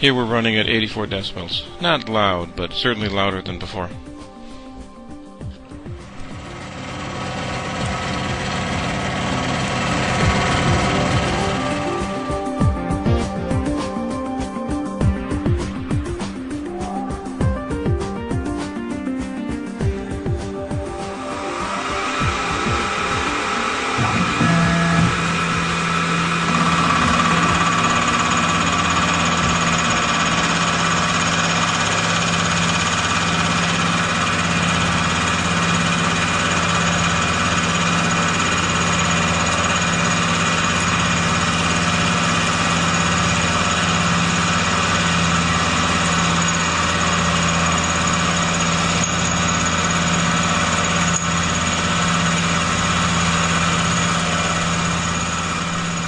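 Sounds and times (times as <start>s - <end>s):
low pulsing hum: 4.9s - 13.8s, 20.8s - 36.1s
milling machine cutting metal: 5.8s - 13.4s, 19.9s - 56.0s.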